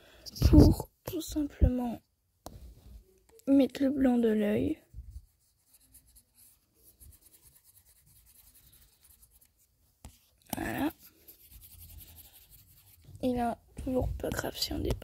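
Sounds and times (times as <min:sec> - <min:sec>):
drawing strokes on touchscreen: 0:05.2 - 0:13.3.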